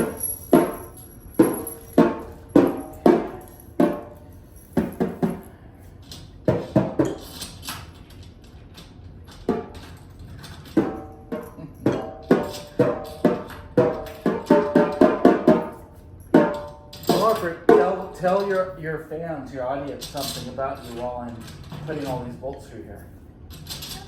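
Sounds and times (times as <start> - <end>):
drum heads tapped by hand: 10.8 - 15.7.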